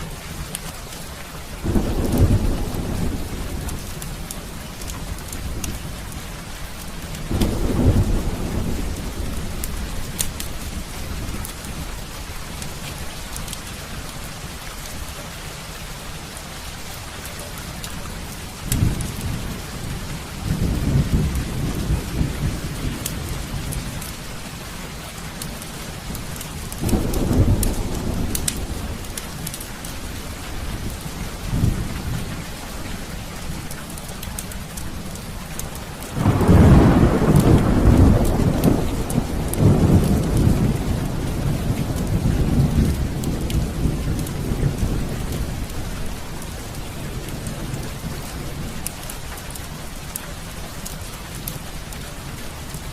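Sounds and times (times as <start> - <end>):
heavy rain falling: 0.0 - 52.9
rolling thunder: 1.6 - 6.0, 7.2 - 12.0, 18.6 - 24.2, 25.6 - 33.7, 36.0 - 48.9.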